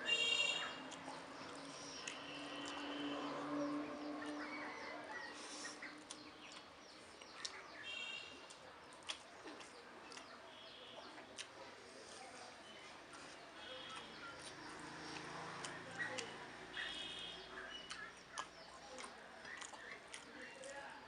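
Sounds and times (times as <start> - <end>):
birds chirping: 0.0 - 21.0
wet chewing mouth clicks: 0.9 - 2.9, 8.5 - 10.4, 17.6 - 20.8.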